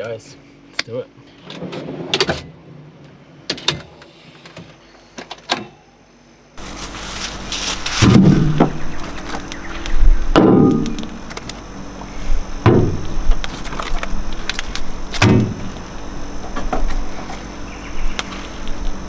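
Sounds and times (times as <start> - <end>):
heavy thumps with ring: 10.3 - 11.1.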